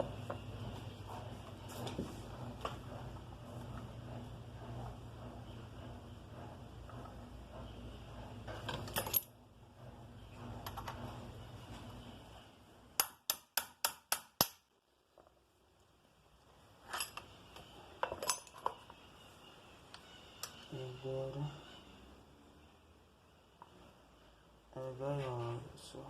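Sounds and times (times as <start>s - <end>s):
metal tools clinking: 8.7s - 9.3s, 16.8s - 17.3s, 18.0s - 18.9s.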